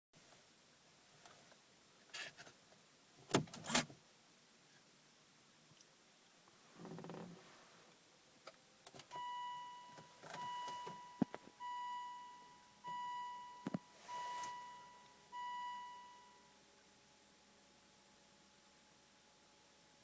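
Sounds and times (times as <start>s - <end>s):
electronic warning chime: 9.2s - 16.5s.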